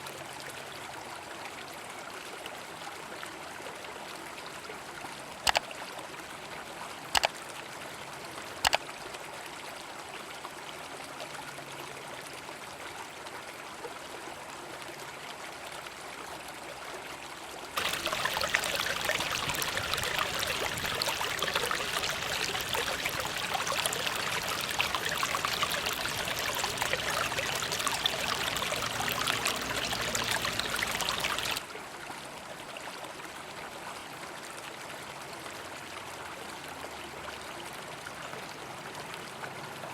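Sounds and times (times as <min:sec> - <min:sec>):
close hissy water or crackle: 0:17.8 - 0:31.6
river flowing: 0:17.8 - 0:31.6.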